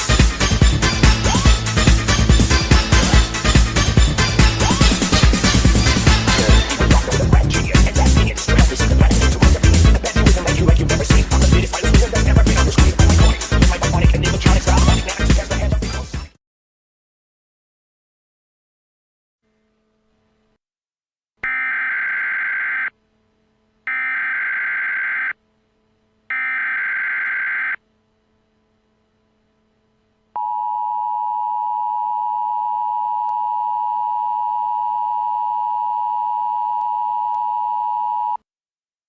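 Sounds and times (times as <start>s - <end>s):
harsh two-tone attention signal: 21.4s - 22.9s, 23.9s - 25.3s, 26.3s - 27.8s
digital data screech: 21.5s - 22.9s, 23.9s - 25.3s, 26.3s - 27.8s.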